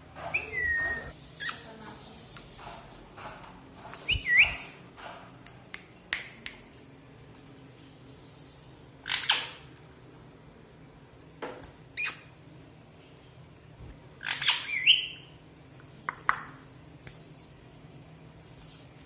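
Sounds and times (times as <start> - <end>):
parrot squawking: 0.2 - 1.6, 14.2 - 15.2.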